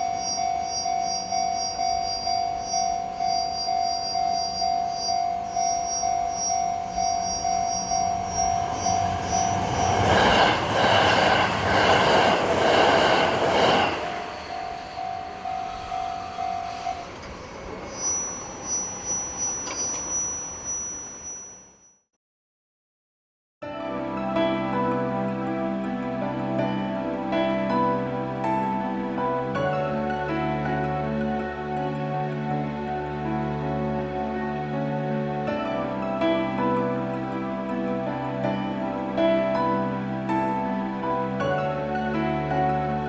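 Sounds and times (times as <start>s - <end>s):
level crossing alarm ringing: 0.0s - 21.8s
train rushing past: 6.3s - 20.2s.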